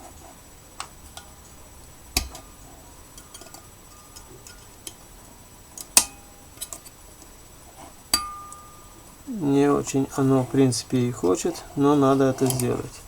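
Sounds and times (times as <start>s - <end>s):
metallic ring: 6.0s - 6.4s, 8.1s - 9.1s
pliers clicking on metal: 12.4s - 12.8s.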